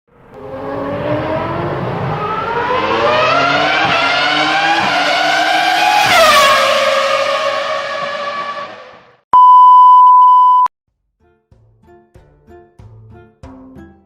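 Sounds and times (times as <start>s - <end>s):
car engine accelerating: 0.1s - 9.2s.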